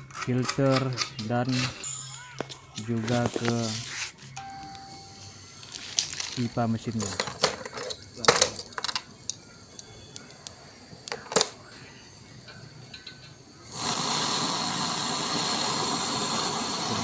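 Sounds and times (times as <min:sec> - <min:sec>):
gas torch hissing: 0:00.7 - 0:04.3, 0:09.1 - 0:17.0.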